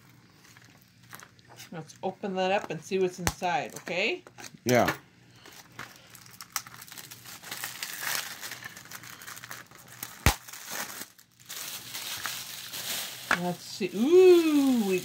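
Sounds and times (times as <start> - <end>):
plastic wrap crinkling and tearing: 0.0 - 1.6, 5.4 - 15.0.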